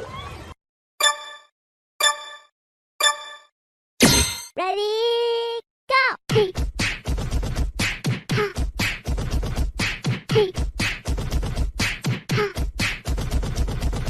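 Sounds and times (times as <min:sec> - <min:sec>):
beatbox percussion: 0:06.3 - 0:14.0.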